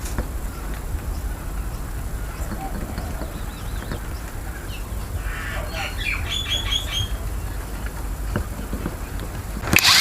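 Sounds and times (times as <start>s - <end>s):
steady low hum: 0.0s - 10.0s
loud sharp noise: 9.6s - 10.0s.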